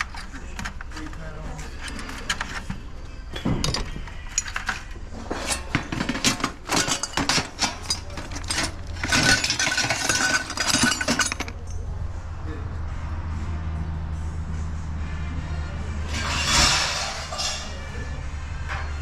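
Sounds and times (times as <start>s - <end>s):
scrap metal clattering: 0.0s - 11.7s, 16.0s - 18.0s.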